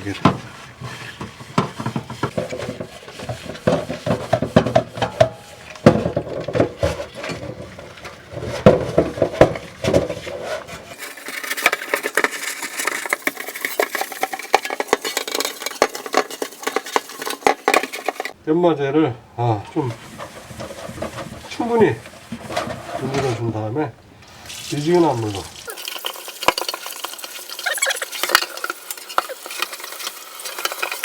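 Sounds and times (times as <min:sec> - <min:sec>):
sponge scrubbing metal pot: 0:00.0 - 0:18.4, 0:19.6 - 0:23.6, 0:24.2 - 0:31.0.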